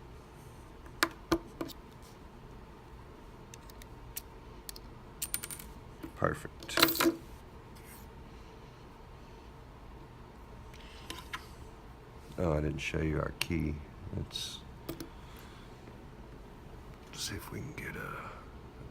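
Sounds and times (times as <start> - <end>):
lock parts clicking and clinking: 3.5 - 5.8, 6.6 - 7.2.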